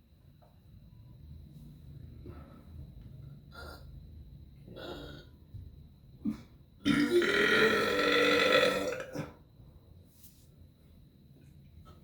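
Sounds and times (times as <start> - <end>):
long loud burp: 6.3 - 9.4.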